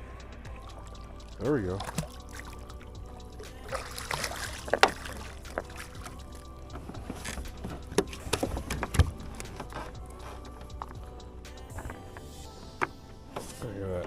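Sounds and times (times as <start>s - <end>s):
steady low hum: 0.0s - 13.7s
water splashing: 0.5s - 9.7s.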